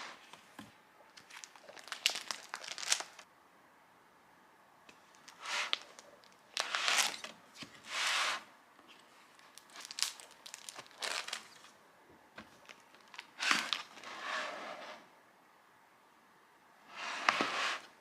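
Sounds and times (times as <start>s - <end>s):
crinkly packaging being torn: 1.2s - 3.2s, 5.1s - 7.2s, 9.4s - 11.7s, 12.6s - 14.0s.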